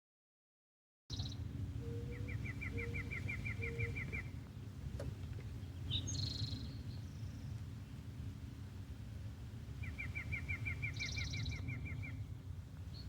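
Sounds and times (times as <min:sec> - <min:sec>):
high bird chirps: 0:01.1 - 0:04.3
steady low hum: 0:01.1 - 0:13.0
bird trilling: 0:01.8 - 0:04.4, 0:09.8 - 0:12.2.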